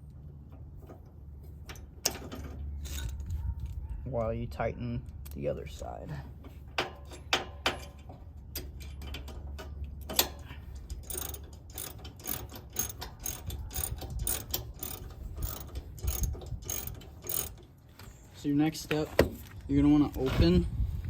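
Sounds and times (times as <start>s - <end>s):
ratchet wrench clicking: 7.1s - 17.7s.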